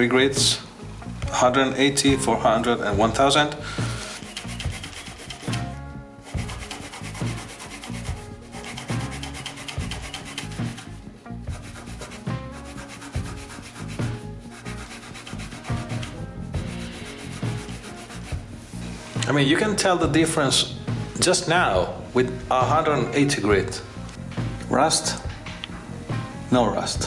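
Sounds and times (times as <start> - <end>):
eraser scrubbing metal frets: 4.0 - 18.9.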